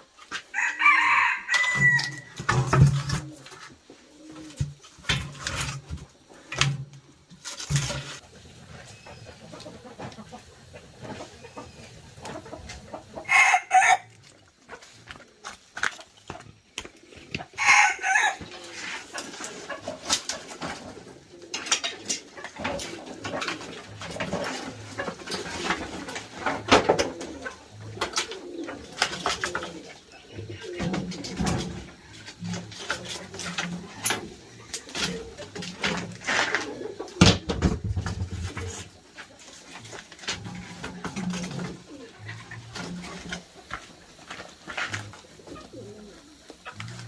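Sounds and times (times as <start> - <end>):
birds calling: 8.2 - 14.0.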